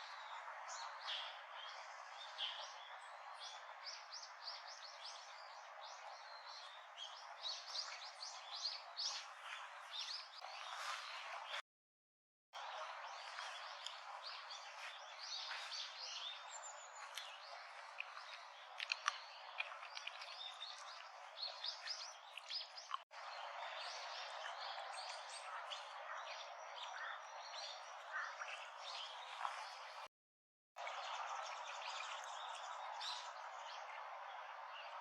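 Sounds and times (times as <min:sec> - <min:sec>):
steady outdoor hiss: 0:00.0 - 0:11.6, 0:12.6 - 0:30.0, 0:30.8 - 0:35.0
birds chirping and calling: 0:12.6 - 0:23.0.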